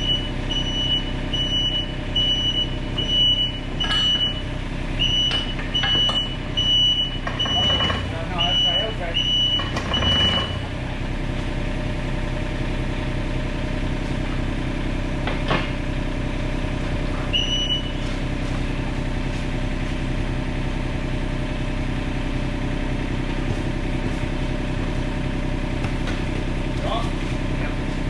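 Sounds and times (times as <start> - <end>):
travel alarm beeps: 0.0 - 10.6, 17.3 - 18.0
diesel engine running: 0.0 - 28.0.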